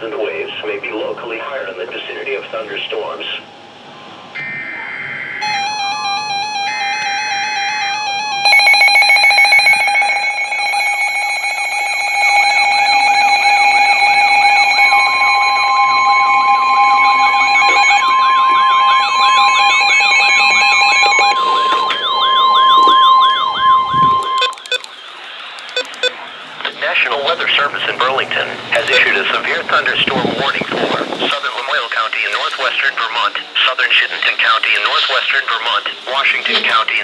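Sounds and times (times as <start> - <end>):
siren-like warble: 4.3 - 24.9, 27.1 - 31.2
long steady alert tone: 4.4 - 25.0, 25.6 - 26.2, 26.8 - 31.0
layered electronic alert tones: 5.4 - 24.9, 25.6 - 26.2, 28.8 - 29.6.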